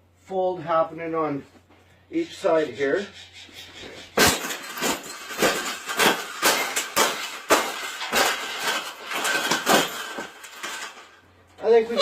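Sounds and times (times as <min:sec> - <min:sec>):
cage being crushed crunching: 0:04.2 - 0:12.0.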